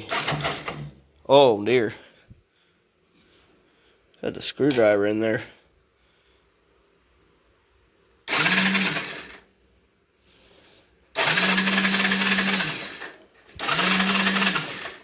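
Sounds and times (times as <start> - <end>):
electric starter motor cranking: 0.0 - 1.0, 8.2 - 9.5, 11.1 - 15.0.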